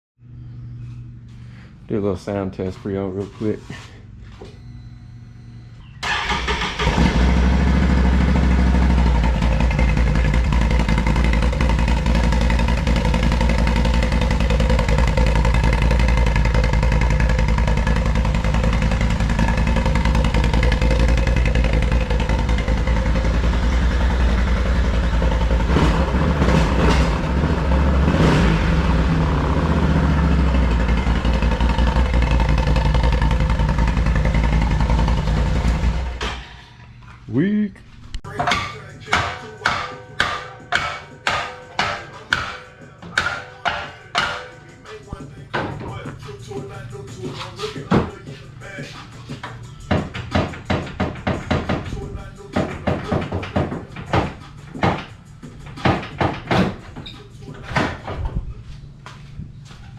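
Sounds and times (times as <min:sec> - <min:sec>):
engine throttle blips: 0:04.5 - 0:36.5
engine running loud: 0:06.0 - 0:36.4.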